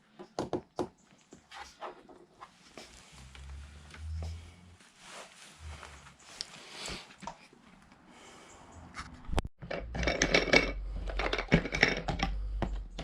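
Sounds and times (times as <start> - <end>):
plastic parts clattering: 9.6 - 13.0.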